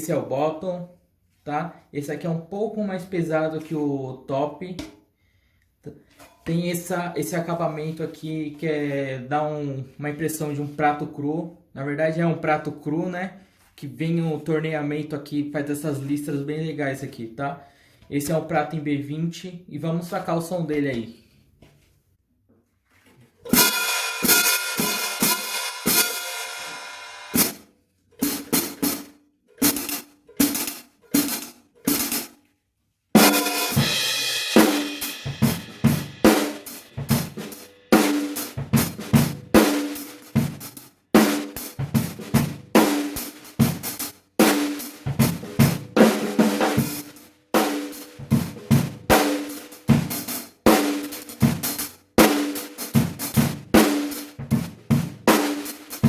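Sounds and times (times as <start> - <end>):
drum-kit groove: 23.4 - 32.4, 33.1 - 56.0
hi-hat cymbal strikes: 23.6 - 27.6, 33.2 - 39.0.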